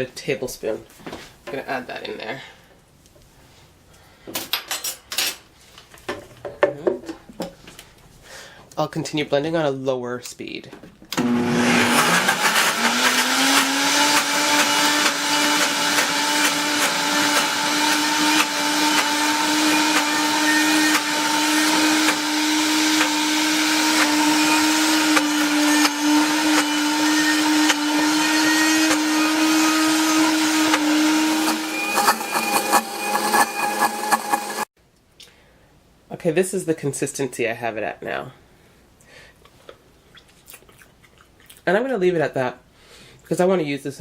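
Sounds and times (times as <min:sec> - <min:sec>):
blender motor hum: 0:11.2 - 0:34.7.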